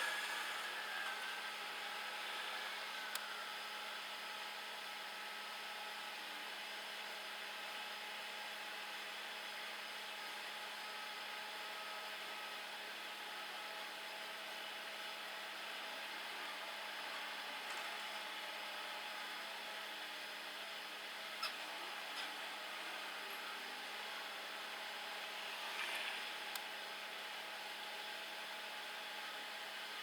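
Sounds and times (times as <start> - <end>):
excavator engine and hydraulics whirring: 0.0 - 4.2.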